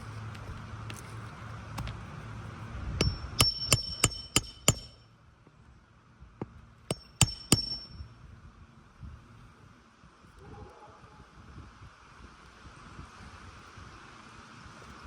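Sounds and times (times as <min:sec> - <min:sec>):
hammer blows on nails: 0:03.0 - 0:05.0, 0:06.9 - 0:08.0.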